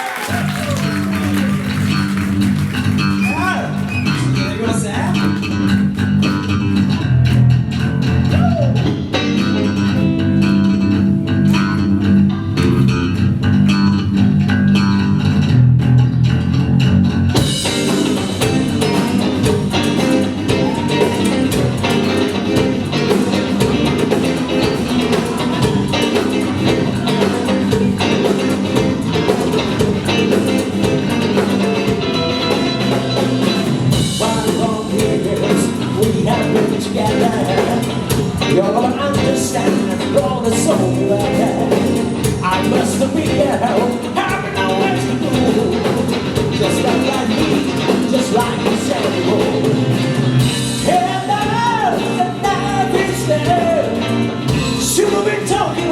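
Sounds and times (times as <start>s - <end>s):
electric bass and guitar groove: 0.2s - 55.9s
drums and cymbals: 14.4s - 55.9s.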